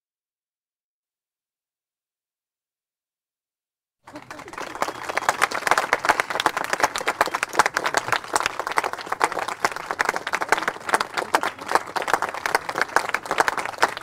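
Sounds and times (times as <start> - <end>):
crowd applauding: 4.1 - 14.0.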